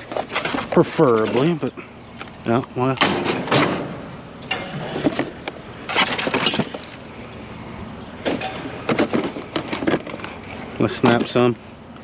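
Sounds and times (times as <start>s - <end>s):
plastic and metal fan clattering: 8.3s - 11.5s.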